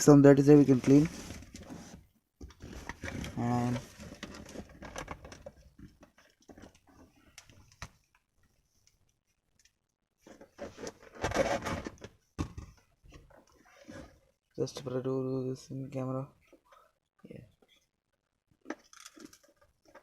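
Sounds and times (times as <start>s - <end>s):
scraping rustle: 0.5s - 2.0s.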